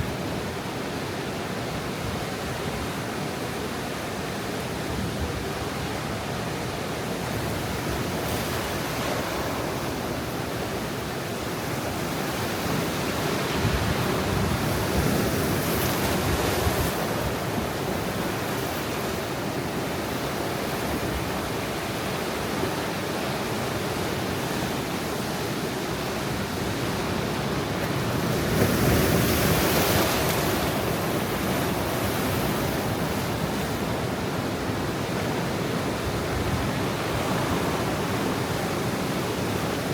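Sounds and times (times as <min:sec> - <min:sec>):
ocean surf washing on shore: 0:00.0 - 0:39.9
waves breaking: 0:04.2 - 0:39.9.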